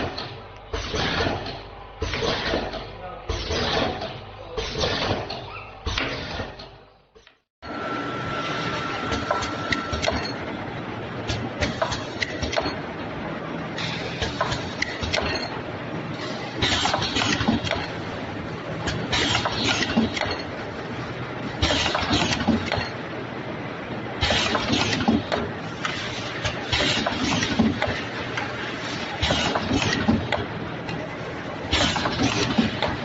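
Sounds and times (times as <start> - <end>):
machine clattering burst: 24.2 - 30.4.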